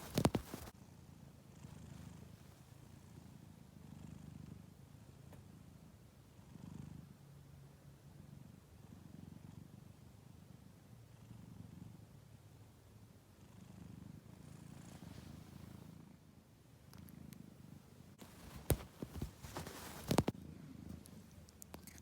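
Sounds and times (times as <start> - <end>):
cat purring: 0.0 - 1.0, 13.5 - 22.0.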